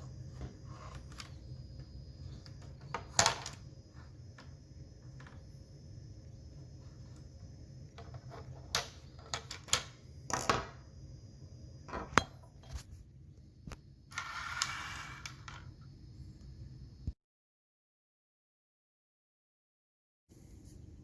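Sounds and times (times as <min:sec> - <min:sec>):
low steady hum: 0:00.0 - 0:14.4.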